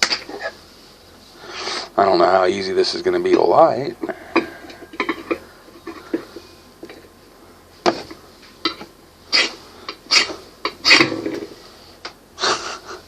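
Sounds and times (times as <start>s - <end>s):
striker scraping ferro rod: 9.3s - 11.5s.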